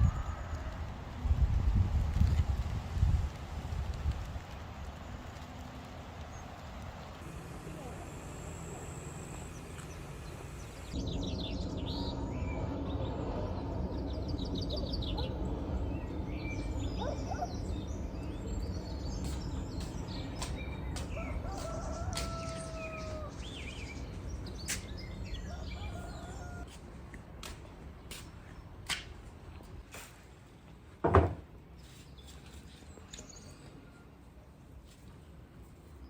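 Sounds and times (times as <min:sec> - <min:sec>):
steady low rumble: 0:07.2 - 0:28.8
small birds chirping: 0:07.6 - 0:13.1, 0:13.9 - 0:26.6
rooster crowing: 0:21.0 - 0:23.7, 0:25.4 - 0:26.7.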